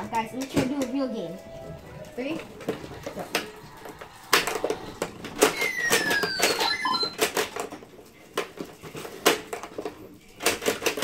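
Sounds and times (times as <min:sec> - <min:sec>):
plastic ball and flipper clacks: 0:02.3 - 0:11.0.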